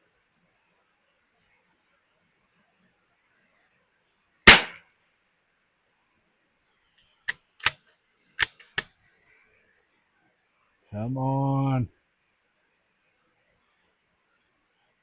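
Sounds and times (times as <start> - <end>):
rifle shot: 4.5 - 4.8
rifle bolt metallic clicks: 7.3 - 7.8, 8.4 - 8.9.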